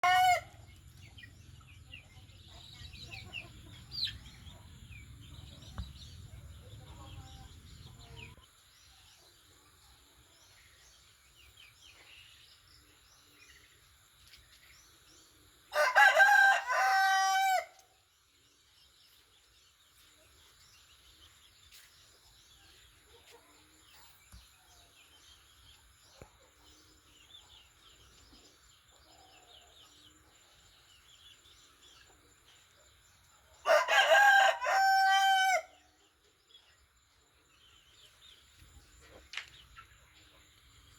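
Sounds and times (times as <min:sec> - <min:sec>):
rooster crowing: 0:00.0 - 0:00.5, 0:15.7 - 0:17.7, 0:33.6 - 0:35.8
small birds chirping: 0:00.0 - 0:40.9.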